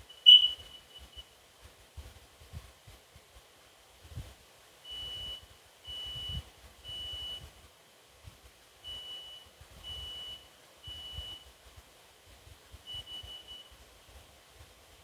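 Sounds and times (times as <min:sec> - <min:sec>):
smoke alarm beeping: 0:00.1 - 0:01.2, 0:04.9 - 0:07.4, 0:08.9 - 0:11.4.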